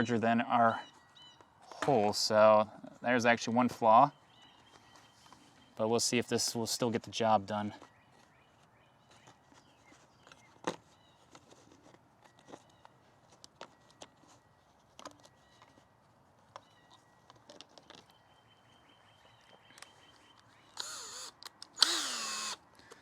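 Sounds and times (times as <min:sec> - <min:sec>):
plastic parts clicking and knocking: 0:16.5 - 0:18.2, 0:19.7 - 0:22.1.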